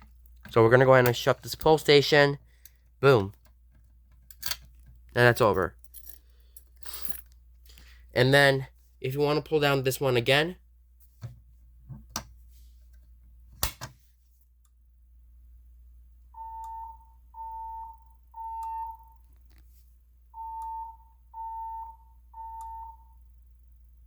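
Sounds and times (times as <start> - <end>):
fire alarm beeping: 16.4 - 19.2, 20.3 - 23.3.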